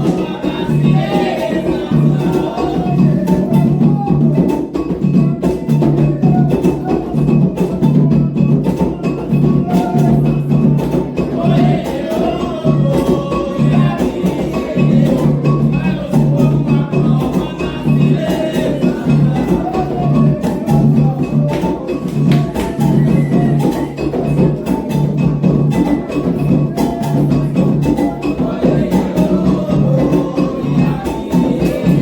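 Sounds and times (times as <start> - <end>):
person singing: 0.0 - 4.5, 11.2 - 25.2, 26.2 - 32.0
hand drums playing: 0.0 - 32.0.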